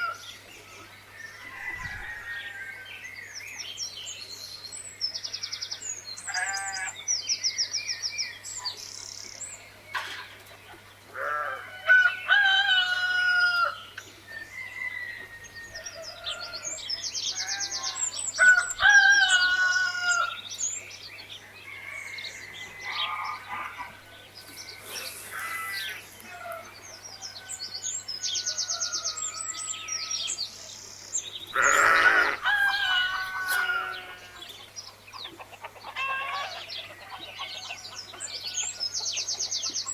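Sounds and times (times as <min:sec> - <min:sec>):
roosters crowing: 0:00.0 - 0:00.4, 0:01.0 - 0:03.2, 0:06.2 - 0:07.0, 0:11.1 - 0:20.5, 0:21.5 - 0:30.5, 0:31.5 - 0:39.9
small birds chirping: 0:13.9 - 0:39.9
hens clucking: 0:31.6 - 0:38.4.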